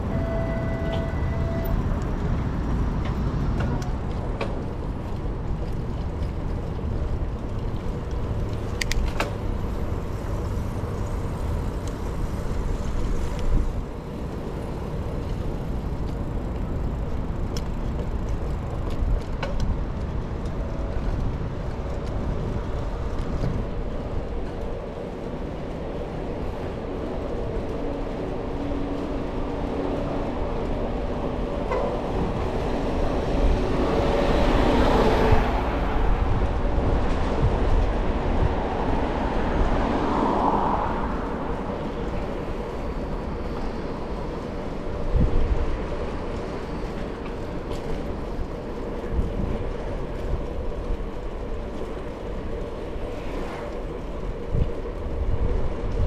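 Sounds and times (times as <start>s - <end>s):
bicycle tyre noise: 0.0s - 56.0s
wind on the microphone: 26.3s - 56.0s.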